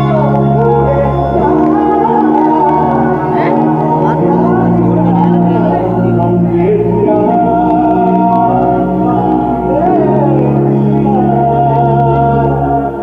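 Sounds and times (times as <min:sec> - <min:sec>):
keyboard chords and melody: 0:00.0 - 0:13.0.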